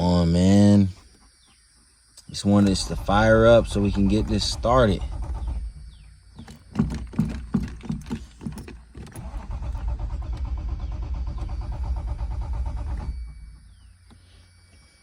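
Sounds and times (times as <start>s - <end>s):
car engine cranking on starter: 2.5s - 14.2s.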